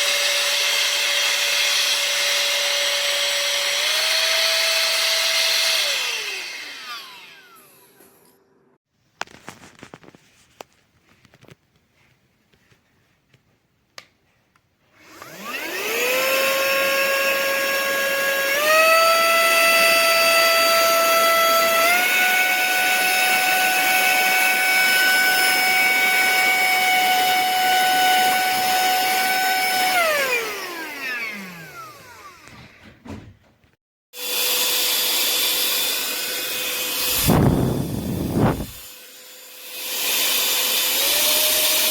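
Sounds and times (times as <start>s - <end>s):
vacuum motor whine: 0.0s - 8.4s, 15.0s - 32.8s, 34.2s - 41.9s.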